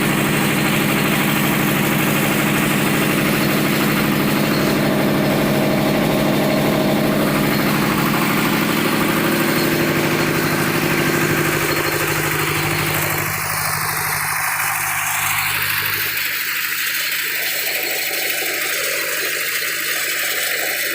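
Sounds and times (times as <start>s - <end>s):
washing machine pulsing drone: 0.0s - 20.9s.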